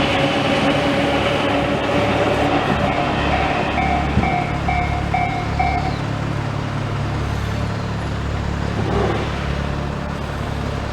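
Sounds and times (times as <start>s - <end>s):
road traffic rumble: 0.0s - 10.9s
level crossing warning bell: 2.8s - 6.6s.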